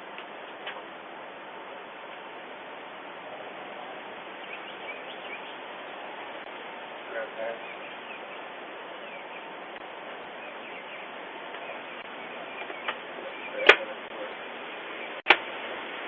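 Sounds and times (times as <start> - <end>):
steady outdoor hiss: 0.0 - 16.0
faint bird chirps: 4.4 - 5.6, 10.3 - 15.2
sharp cracks: 13.6 - 14.0, 15.2 - 15.5.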